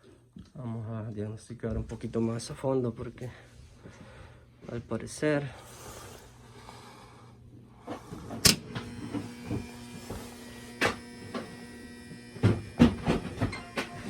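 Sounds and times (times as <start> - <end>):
boiler electrical hum: 0.2 - 14.0
sharp clicks and knocks: 8.3 - 14.0
buzzing tone: 8.5 - 14.0.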